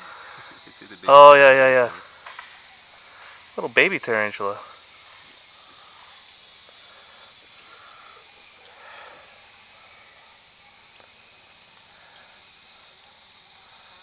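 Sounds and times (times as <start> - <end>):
insects buzzing drone: 0.0 - 14.0.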